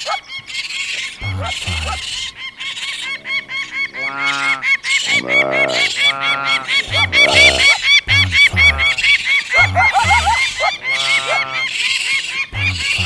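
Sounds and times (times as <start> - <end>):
cartoon honk-like animal calls: 1.2 - 2.2, 4.0 - 11.7, 12.5 - 13.0.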